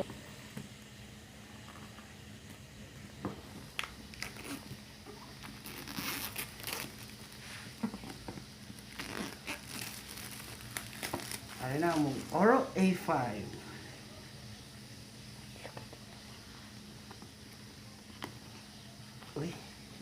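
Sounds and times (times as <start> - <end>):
packaging crinkling and rustling: 3.7 - 12.7.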